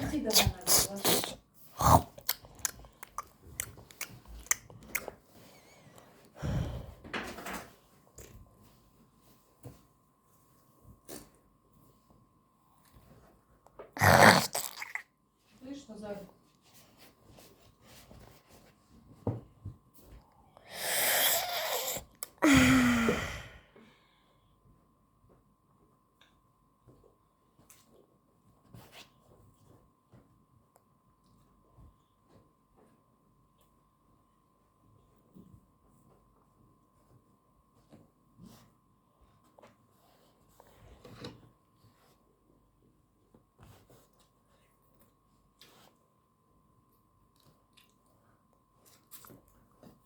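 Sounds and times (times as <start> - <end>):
person chewing with wet clicks: 0.3 - 5.2, 14.3 - 15.1, 47.3 - 48.1, 48.8 - 49.6
breathy noise: 20.6 - 23.8
person wheezing: 20.6 - 23.8.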